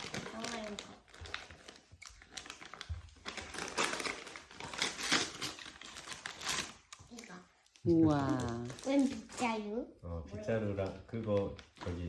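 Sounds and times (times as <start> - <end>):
gift wrapping crinkling: 0.0 - 9.7, 10.4 - 12.0.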